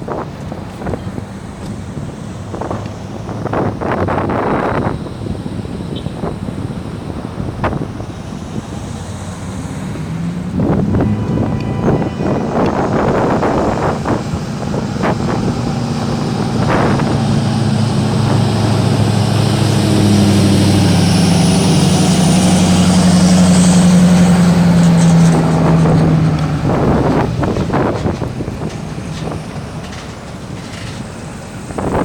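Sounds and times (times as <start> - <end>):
vehicle engine hum: 0.0 - 32.0
knocks and rattles: 23.4 - 32.0.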